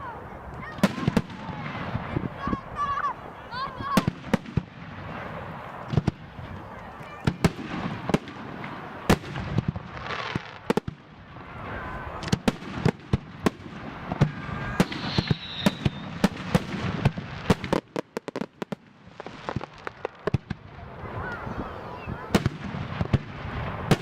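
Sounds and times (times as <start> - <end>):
firework crackling: 0.1 - 24.0
firework shells bursting: 12.2 - 18.3.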